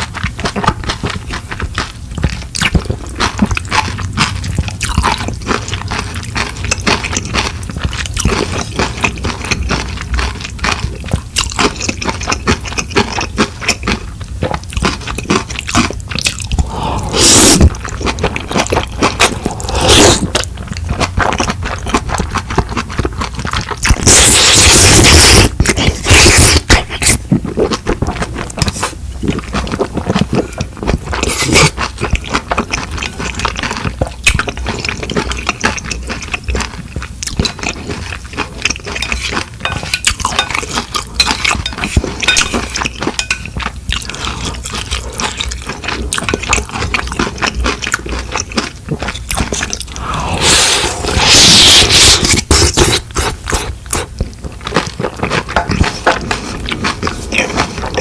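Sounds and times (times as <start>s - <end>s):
chewing with wet mouth clicks: 0.0s - 50.3s, 50.9s - 58.0s
slurping noodles: 16.4s - 20.5s, 23.5s - 31.8s, 49.0s - 54.2s.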